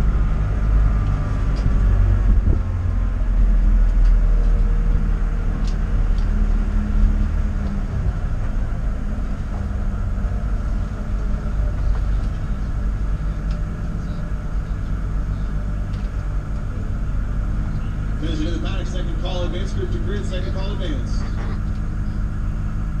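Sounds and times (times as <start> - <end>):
road and wind rumble: 0.0 - 23.0
vehicle engine running: 0.0 - 23.0.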